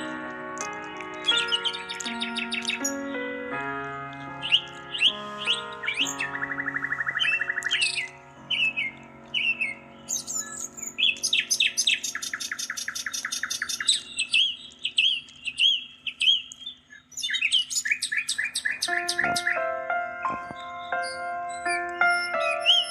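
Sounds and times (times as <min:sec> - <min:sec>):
fast rattling bird trills: 0:00.0 - 0:03.2, 0:04.4 - 0:19.7
steady sustained tones: 0:00.0 - 0:13.4
birds chirping: 0:00.0 - 0:22.9.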